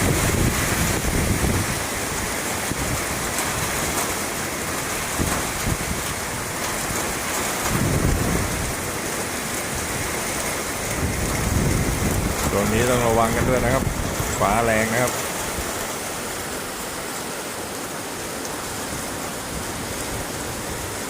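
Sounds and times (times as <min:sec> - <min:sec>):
heavy rain falling: 0:00.0 - 0:21.0
low surge of wind: 0:00.0 - 0:21.0.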